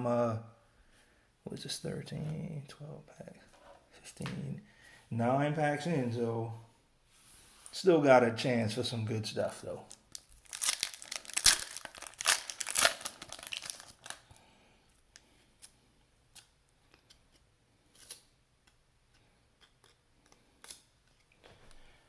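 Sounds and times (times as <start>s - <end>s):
cards clicking and rustling: 9.9s - 14.2s
card pack wrapper tearing: 9.9s - 14.3s.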